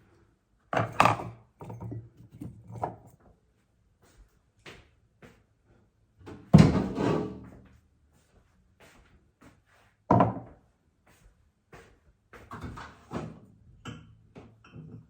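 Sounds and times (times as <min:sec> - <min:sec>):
kitchen items clattering: 0:00.8 - 0:03.2.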